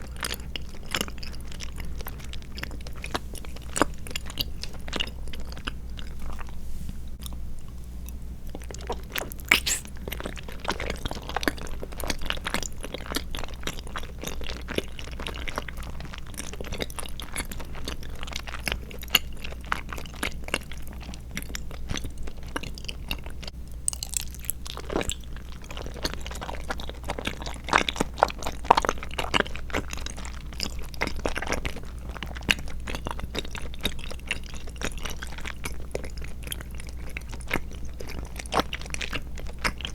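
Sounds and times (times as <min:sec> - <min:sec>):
close chewing mouth clicks: 0:07.2 - 0:23.3.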